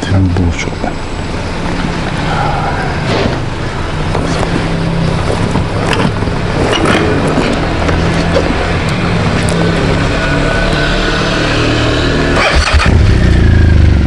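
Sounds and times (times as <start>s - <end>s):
motorcycle engine running: 3.5s - 14.0s.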